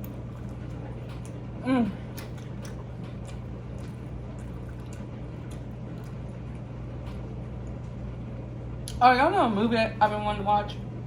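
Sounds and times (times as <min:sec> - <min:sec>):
chewing and mouth sounds: 0:00.0 - 0:08.0
low hum: 0:00.0 - 0:11.0.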